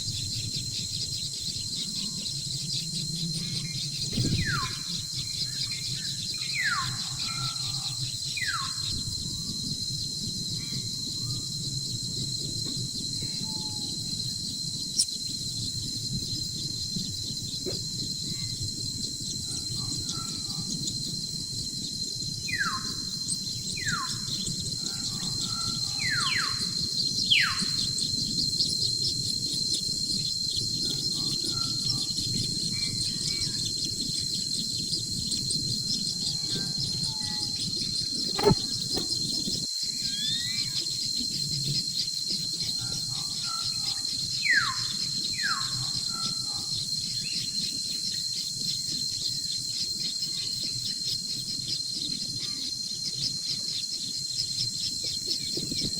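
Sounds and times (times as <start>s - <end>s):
insects droning: 0.0s - 55.9s
sharp click: 38.4s - 39.2s.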